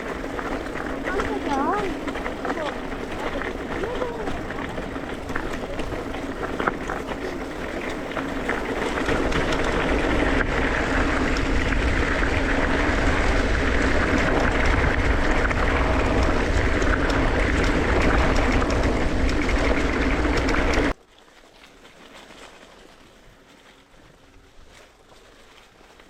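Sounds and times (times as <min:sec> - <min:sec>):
wind rumbling on microphone: 0:00.0 - 0:21.0
mountain bike trail noise: 0:00.0 - 0:26.0.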